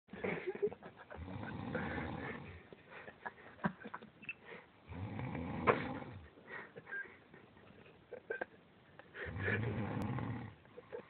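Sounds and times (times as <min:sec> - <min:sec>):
person snoring: 0:01.2 - 0:02.6, 0:04.9 - 0:06.2, 0:09.2 - 0:10.6.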